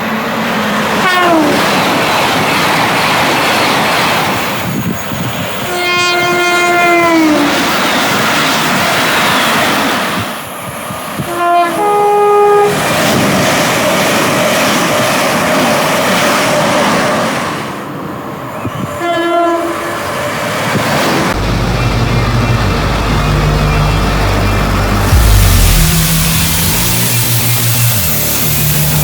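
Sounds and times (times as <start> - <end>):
train rushing past: 0.0 - 29.0
two-tone train horn: 1.0 - 1.7, 5.6 - 7.6, 11.2 - 12.8, 19.0 - 20.1
steady low hum: 21.4 - 29.0.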